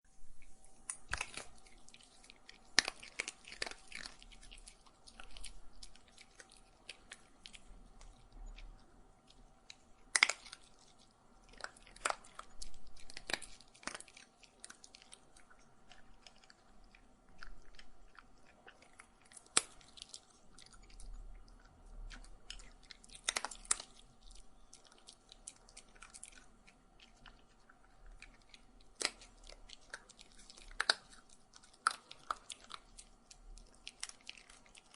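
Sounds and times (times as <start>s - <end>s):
dog chewing and crunching food: 0.3s - 34.9s.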